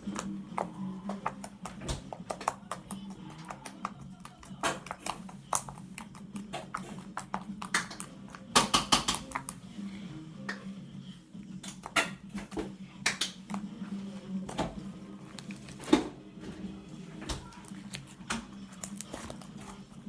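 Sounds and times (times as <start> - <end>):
slime clicking and popping: 0.0 - 9.6, 18.7 - 19.5.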